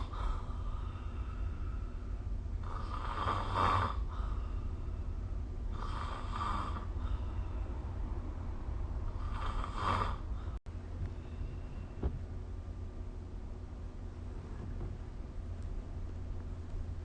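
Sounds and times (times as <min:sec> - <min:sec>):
steady low hum: 0:00.0 - 0:17.0
person snoring: 0:02.6 - 0:04.2, 0:05.7 - 0:07.0, 0:09.2 - 0:10.3.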